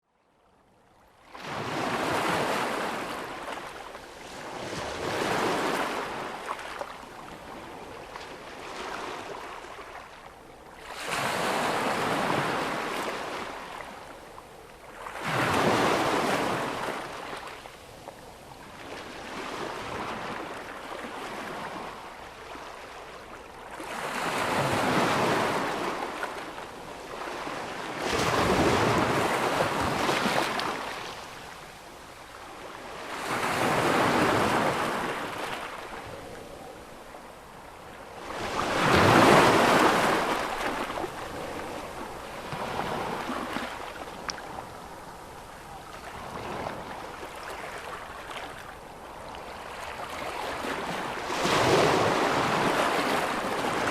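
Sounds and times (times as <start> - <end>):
ocean waves crashing: 38.1 - 44.7, 50.4 - 53.9.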